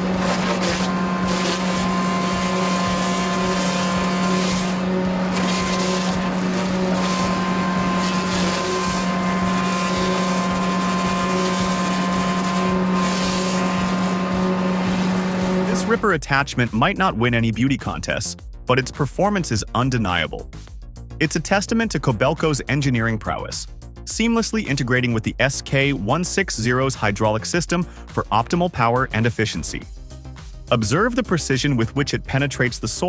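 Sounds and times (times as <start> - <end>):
heavy machine running under load: 0.0 - 16.0.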